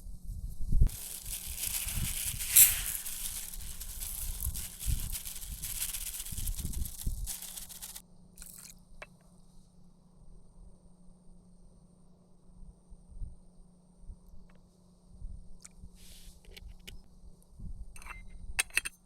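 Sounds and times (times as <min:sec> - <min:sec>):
crinkly rustling and crunching: 0:00.9 - 0:08.6.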